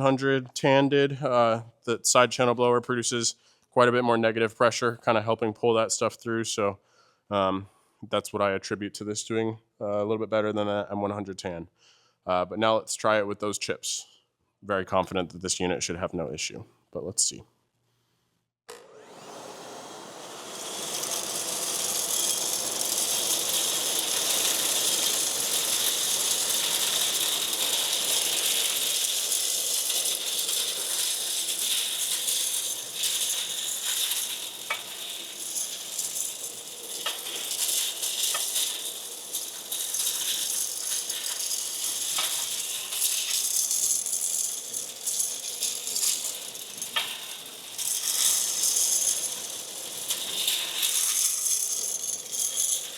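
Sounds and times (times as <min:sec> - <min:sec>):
industrial vacuum running: 0:18.8 - 0:51.0
metal chips rattling through hose: 0:20.5 - 0:52.9.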